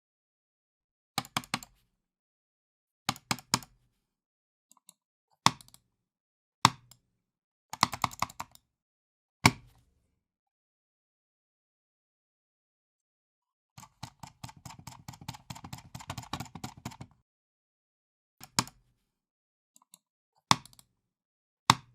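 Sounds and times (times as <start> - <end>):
computer mouse clicking: 4.7 - 5.8, 13.8 - 17.2, 18.4 - 18.8, 19.8 - 20.9.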